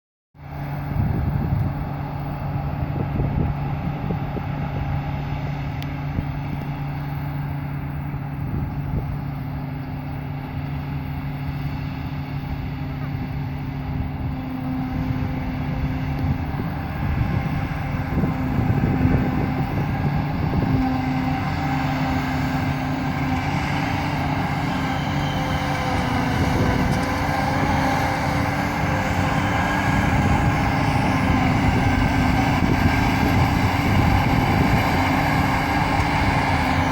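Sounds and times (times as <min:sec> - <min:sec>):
garden chopper droning: 0:12.4 - 0:36.9.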